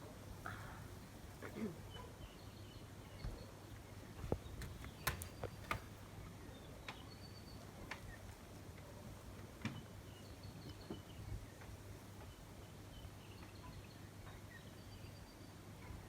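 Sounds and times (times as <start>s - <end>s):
sharp clicks: 4.6s - 5.9s.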